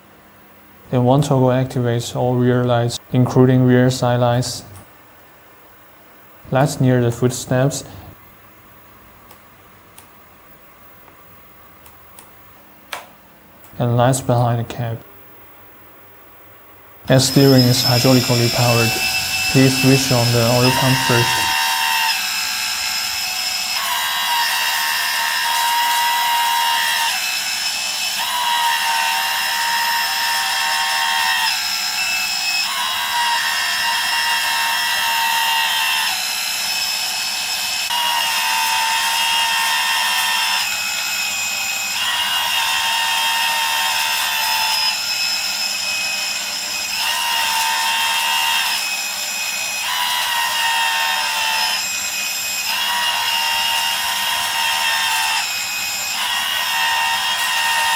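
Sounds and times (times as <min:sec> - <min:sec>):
oil pump high whine: 0:17.1 - 0:24.0.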